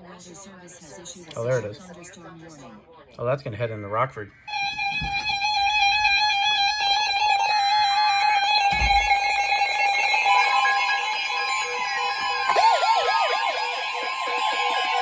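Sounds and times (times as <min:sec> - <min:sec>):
falling pitch glides: 0:04.5 - 0:15.0
electronic alarm beep: 0:07.3 - 0:15.0.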